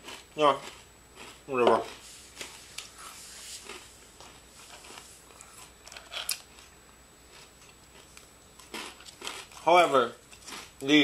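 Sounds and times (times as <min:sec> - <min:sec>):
crunchy snack being chewed: 0:00.0 - 0:11.0.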